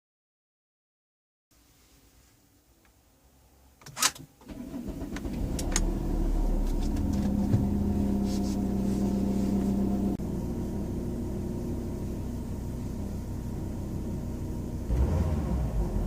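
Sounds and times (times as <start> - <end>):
diesel engine starting and idling: 4.4 - 16.0.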